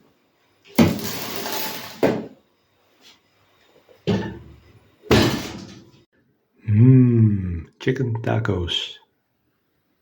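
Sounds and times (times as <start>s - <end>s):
baking sheet scraping oven rack: 0.8s - 2.0s.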